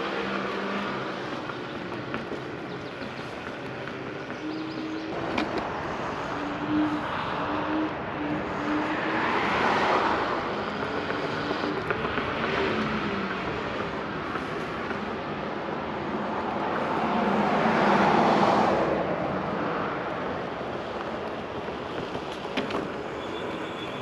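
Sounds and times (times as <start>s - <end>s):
steady rushing riding noise: 0.0s - 24.0s.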